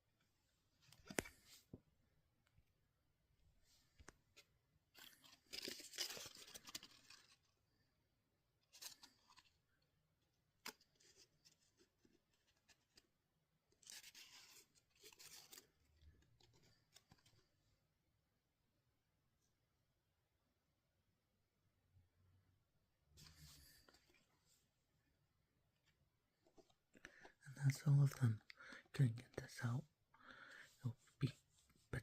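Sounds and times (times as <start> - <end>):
faint scraping and rustling: 10.6 - 17.6, 23.2 - 24.8.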